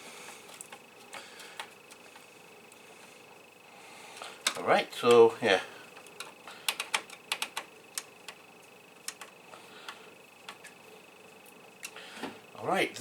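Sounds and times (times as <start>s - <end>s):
faint high whine: 0.0s - 13.0s
computer hardware clicks and taps: 6.0s - 8.4s, 9.0s - 9.3s.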